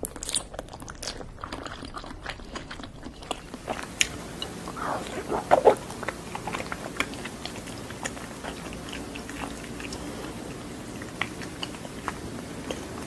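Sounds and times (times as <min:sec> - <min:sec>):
chewing: 0:00.0 - 0:13.0
wet squelching mouth sounds: 0:00.2 - 0:07.4
sharp bite: 0:04.8 - 0:05.8.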